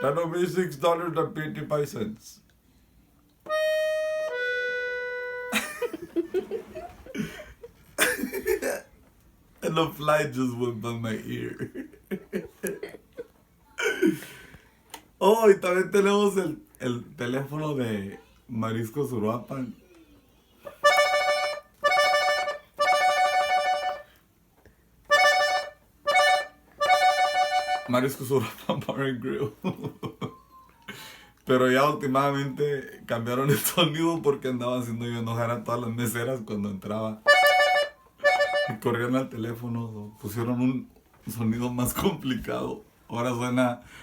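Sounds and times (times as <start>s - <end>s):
accordion note: 0.0s - 0.6s, 3.4s - 5.6s, 20.8s - 24.1s, 25.1s - 28.0s, 37.2s - 38.9s.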